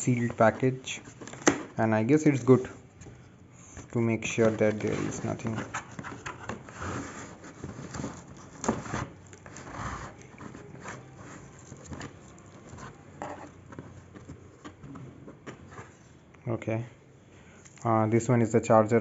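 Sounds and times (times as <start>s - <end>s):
packaging scraping and rustling: 3.8s - 16.2s.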